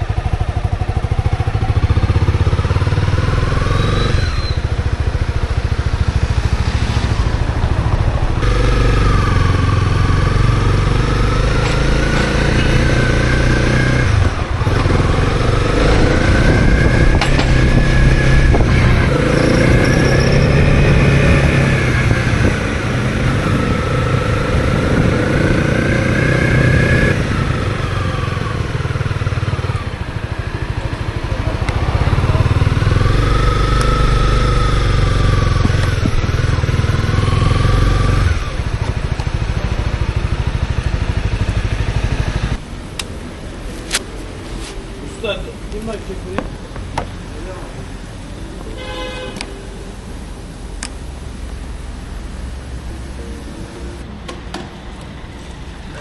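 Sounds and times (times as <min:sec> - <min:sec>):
motorcycle engine revving: 0:00.0 - 0:43.0.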